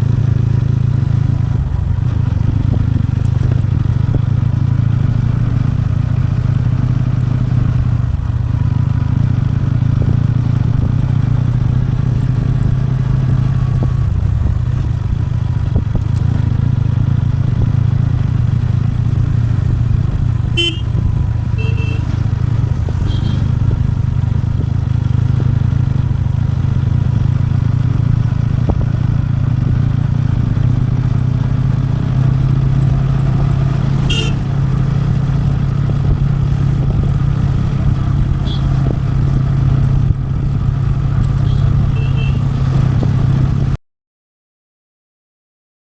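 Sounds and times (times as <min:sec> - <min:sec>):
motorcycle engine running: 0:00.0 - 0:43.8
vehicle horn beeps: 0:20.6 - 0:22.2, 0:23.0 - 0:23.5, 0:34.1 - 0:34.5, 0:38.4 - 0:38.8, 0:41.4 - 0:42.5.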